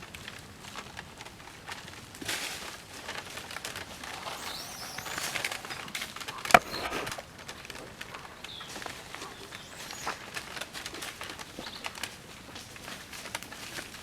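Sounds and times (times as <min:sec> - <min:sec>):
rustling with crackles: 0:00.1 - 0:14.0
faint high chirp: 0:04.2 - 0:07.2
sharp click: 0:06.5 - 0:07.2.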